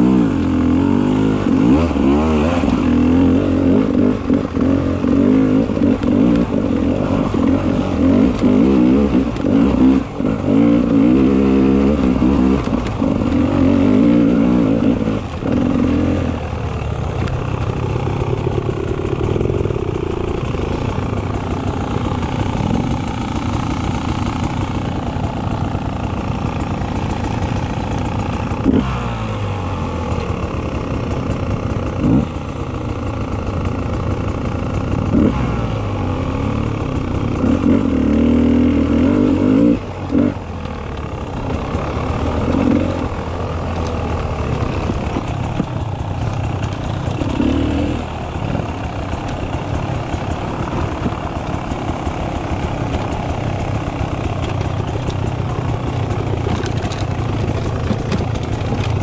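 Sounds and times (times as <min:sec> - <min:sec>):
dirt bike engine revving: 0:00.0 - 0:59.0.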